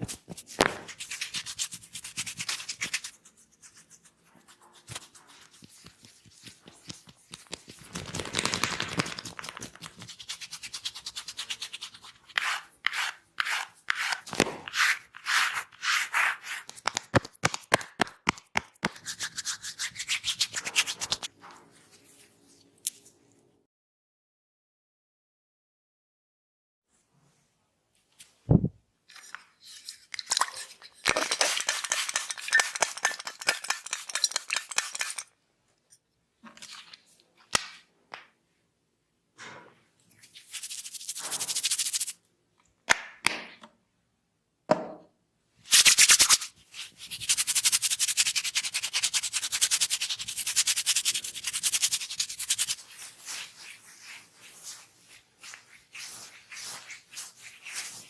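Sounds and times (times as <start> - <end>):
hair crackling under hands: 7.4 - 10.0.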